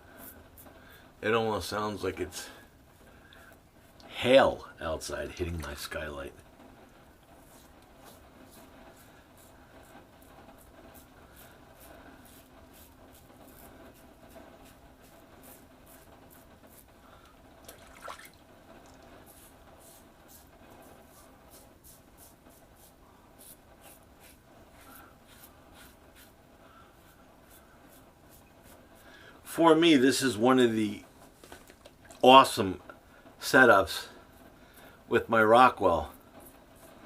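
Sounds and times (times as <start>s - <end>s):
razor scraping stubble: 7.4s - 16.9s, 19.2s - 29.8s.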